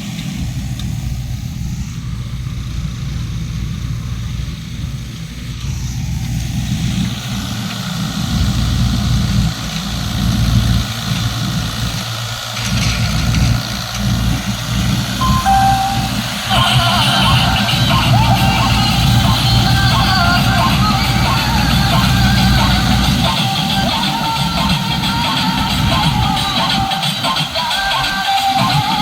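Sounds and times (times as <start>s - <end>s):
harvesting machine engine running: 0.0s - 15.2s, 18.4s - 25.9s.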